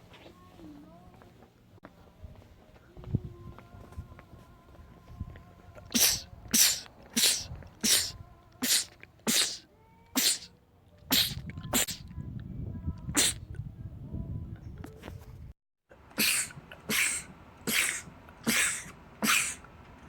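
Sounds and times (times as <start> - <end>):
man sneezing: 6.0 - 9.6, 10.2 - 10.5, 11.1 - 12.0, 13.2 - 13.4, 16.2 - 19.6.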